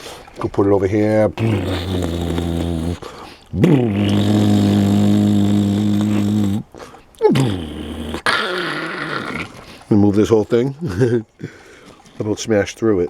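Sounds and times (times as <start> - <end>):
man imitating engine growl: 1.4 - 9.6.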